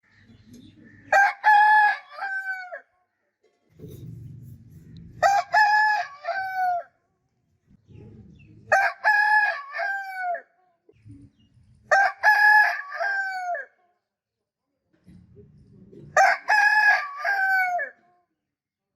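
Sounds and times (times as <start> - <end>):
rooster crowing: 1.1 - 2.8, 5.2 - 6.9, 8.7 - 10.4, 11.9 - 13.7, 16.2 - 18.0
low rustling noise: 3.6 - 5.3.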